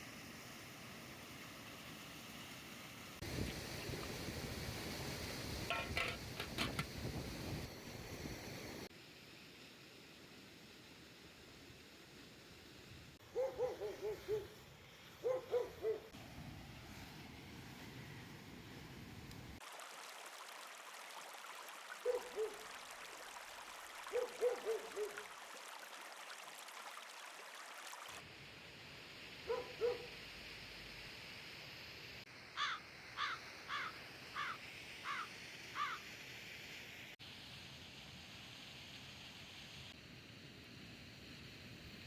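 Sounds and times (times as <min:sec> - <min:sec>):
background hiss: 0:00.0 - 0:20.4, 0:28.2 - 0:42.0
low hooting bird calls: 0:32.6 - 0:36.0.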